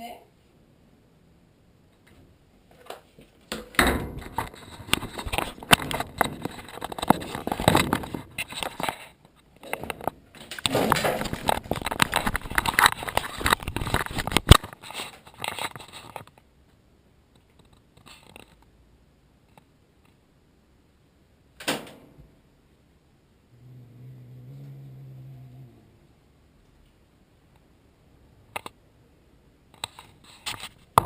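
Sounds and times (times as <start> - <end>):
rustling and clattering handling: 2.0 - 16.4
low steady hum: 16.3 - 29.8.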